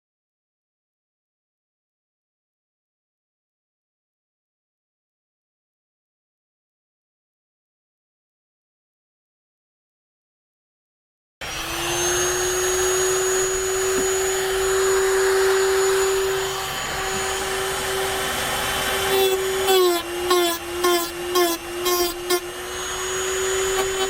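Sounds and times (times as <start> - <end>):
rotary tool cutting metal: 11.4 - 24.0.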